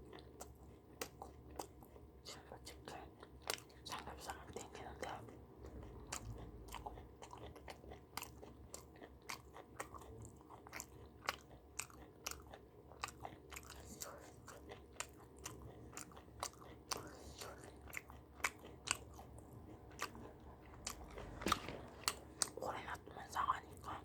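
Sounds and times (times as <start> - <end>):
person chewing crunchy food: 0.0 - 24.0.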